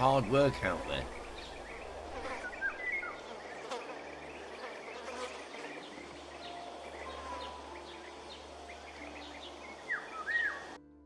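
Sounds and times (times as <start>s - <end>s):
insects hissing: 0.0s - 10.8s
small bird chirps: 0.1s - 3.8s
whistled bird call: 0.4s - 3.2s, 9.9s - 10.6s.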